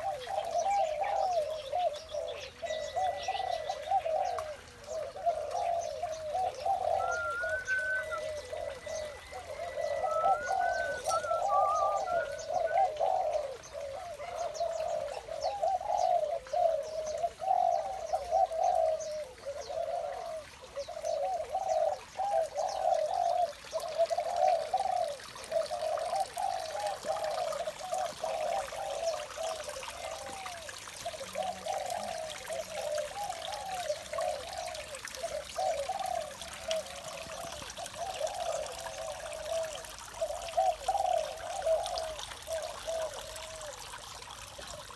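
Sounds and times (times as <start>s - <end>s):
doves cooing: 0.0s - 44.9s
small bird chirp: 6.7s - 13.5s.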